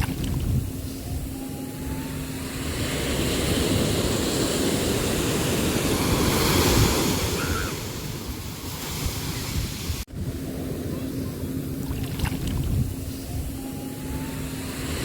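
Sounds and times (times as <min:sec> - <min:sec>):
sea waves breaking: 0:01.5 - 0:12.7.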